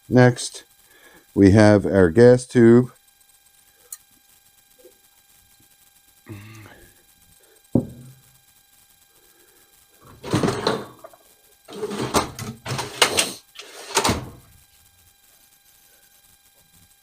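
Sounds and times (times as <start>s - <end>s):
sharp knock on workbench: 7.8s - 8.2s.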